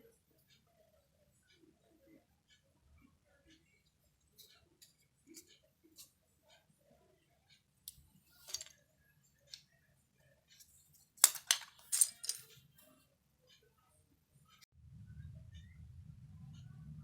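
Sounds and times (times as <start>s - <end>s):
keycaps clacking: 11.2s - 12.5s.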